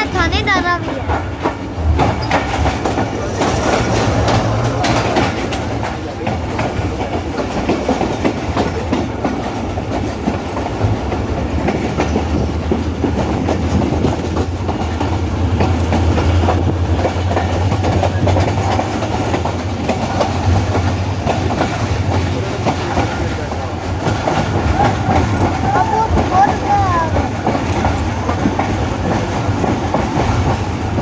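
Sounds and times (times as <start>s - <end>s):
train carriages rumbling: 0.0s - 31.0s
wheels clacking over rails: 0.0s - 31.0s.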